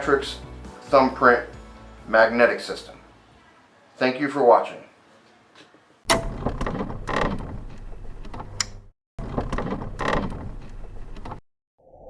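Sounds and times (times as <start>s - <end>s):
sharp knock: 6.1s - 6.7s.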